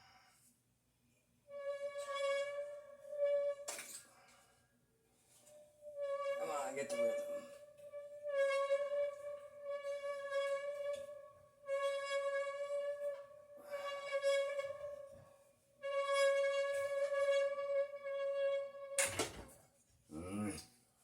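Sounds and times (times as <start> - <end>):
glass singing tone from friction: 5.4 - 19.0.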